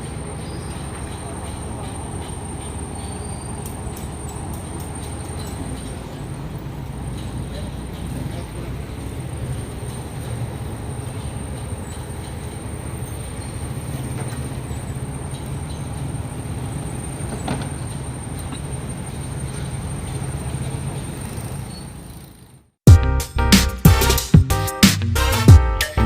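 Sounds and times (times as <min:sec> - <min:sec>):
heavy engine rumbling: 0:00.0 - 0:21.4.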